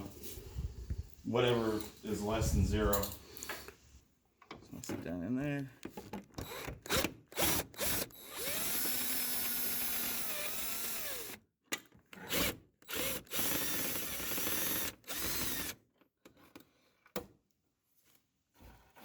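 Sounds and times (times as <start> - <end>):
power drill running: 6.4 - 11.4, 12.3 - 15.8.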